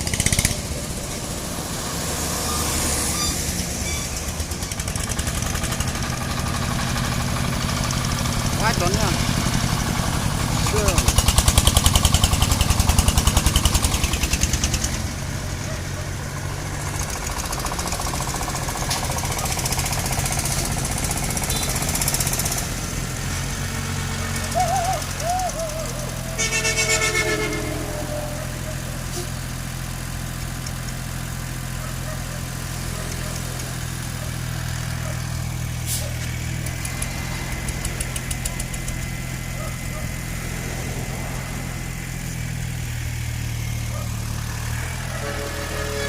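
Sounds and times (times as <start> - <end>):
engine humming steadily: 0.0 - 46.0
brief pitched tone: 2.4 - 4.4, 25.8 - 29.7, 45.1 - 46.0.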